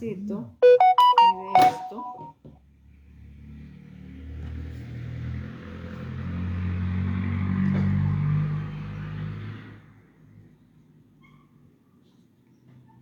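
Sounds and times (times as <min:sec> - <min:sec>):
vehicle engine passing by: 0:02.8 - 0:10.2.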